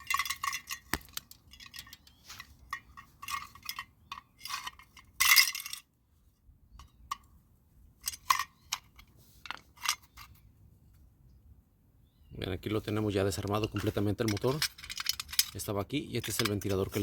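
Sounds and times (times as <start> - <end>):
metal motor parts clattering: 0.0 - 5.9, 8.0 - 10.4, 13.4 - 17.0.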